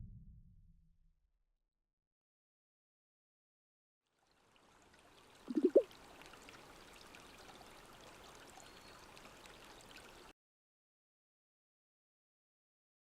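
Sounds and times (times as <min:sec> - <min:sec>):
water pouring: 0:04.3 - 0:10.3
rising gurgles: 0:05.5 - 0:05.9.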